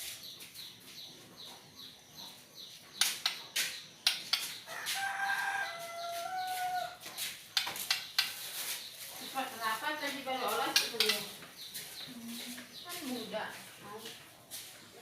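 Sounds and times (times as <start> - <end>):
rooster-like crow: 4.7 - 7.0.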